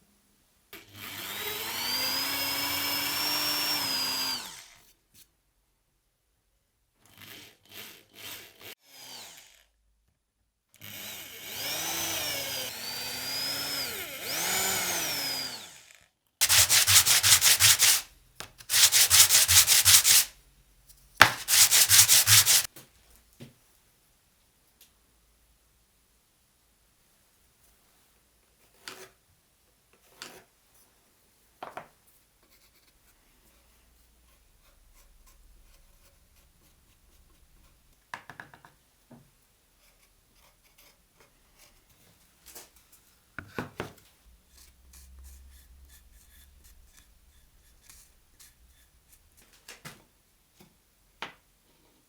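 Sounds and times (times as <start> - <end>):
light scraping and rubbing: 16.4 - 20.3, 21.2 - 22.7, 44.5 - 49.8.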